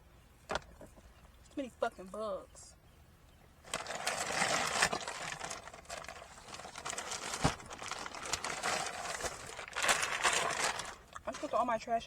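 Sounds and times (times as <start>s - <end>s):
packaging rustling and crinkling: 3.6s - 11.6s.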